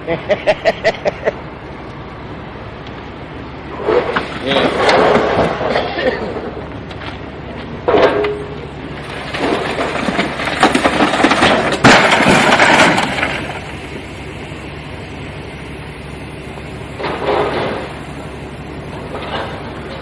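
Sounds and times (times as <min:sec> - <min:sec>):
steady low rumble: 0:00.0 - 0:20.0
vehicle collision bang: 0:03.8 - 0:06.6, 0:07.9 - 0:13.8
crunching and breaking: 0:09.0 - 0:14.0.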